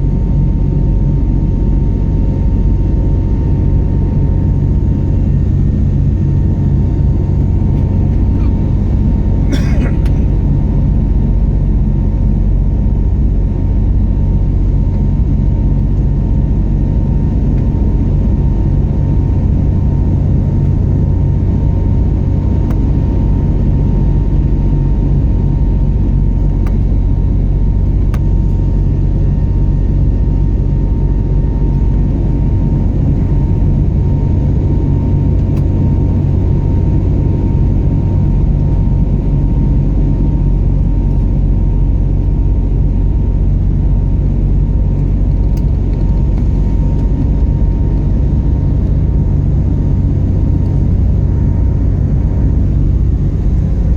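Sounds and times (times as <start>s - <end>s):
airliner cabin drone: 0.0s - 53.9s
thin constant whine: 18.0s - 53.9s.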